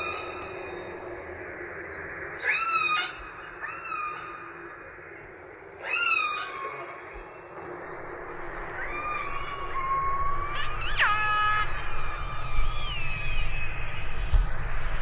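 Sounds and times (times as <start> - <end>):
steady hiss: 6.9 - 15.0.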